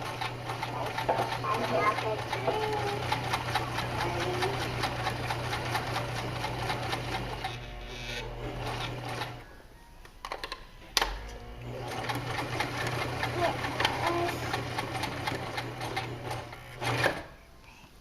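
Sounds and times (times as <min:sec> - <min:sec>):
sewing machine ticking: 0:00.0 - 0:07.6, 0:11.9 - 0:17.2.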